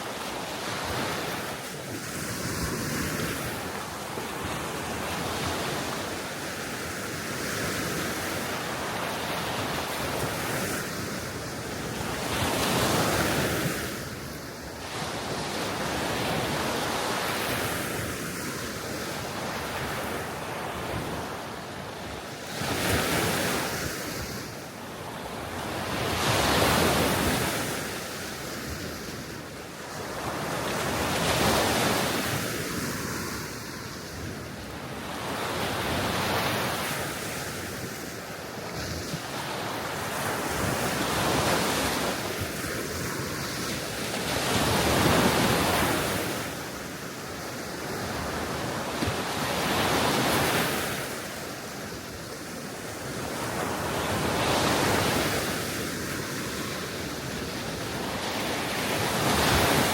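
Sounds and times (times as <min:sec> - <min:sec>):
small waves washing onto shore: 0:00.0 - 0:59.9
wind: 0:00.0 - 0:59.9.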